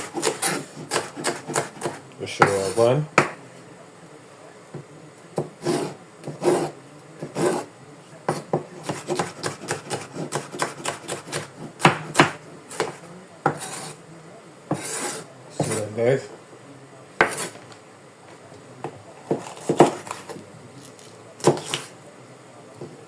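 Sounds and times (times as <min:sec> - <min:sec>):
knife cutting vegetables on board: 0:00.0 - 0:03.4, 0:05.4 - 0:07.7, 0:08.3 - 0:14.0, 0:14.7 - 0:15.8, 0:17.2 - 0:17.7, 0:19.2 - 0:21.9.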